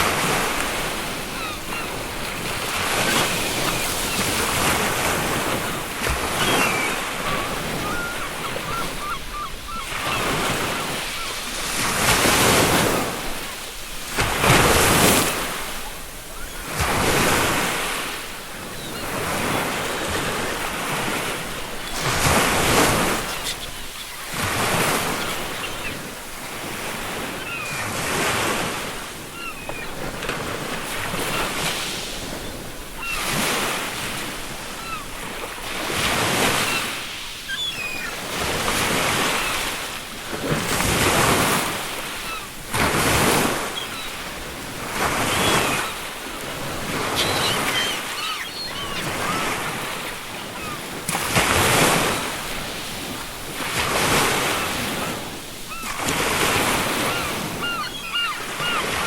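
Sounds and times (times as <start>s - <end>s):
ocean waves washing in: 0.0s - 59.0s
faint seagull calls: 1.2s - 4.8s, 6.3s - 11.4s, 18.5s - 26.1s, 27.2s - 28.0s, 29.3s - 30.0s, 33.0s - 33.4s, 34.7s - 35.2s, 36.4s - 38.2s, 45.0s - 46.2s, 46.9s - 50.8s, 54.5s - 56.0s, 56.9s - 59.0s.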